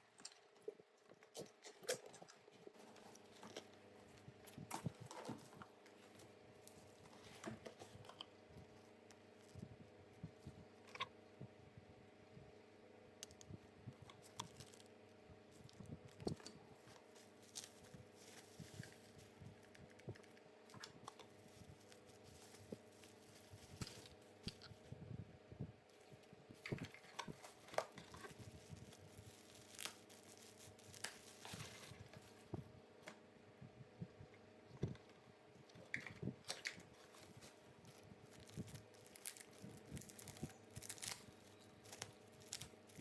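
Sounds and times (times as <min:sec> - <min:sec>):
faint steady hum: 0:00.0 - 0:43.0
packaging rustling and crinkling: 0:14.1 - 0:25.0, 0:25.9 - 0:33.1, 0:35.7 - 0:43.0.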